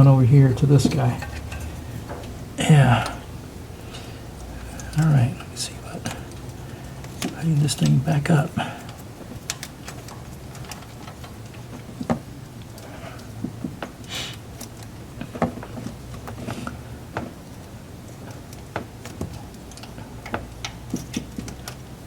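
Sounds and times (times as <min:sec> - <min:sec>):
scraping rustles: 0:00.0 - 0:16.9
steady low hum: 0:00.0 - 0:22.0.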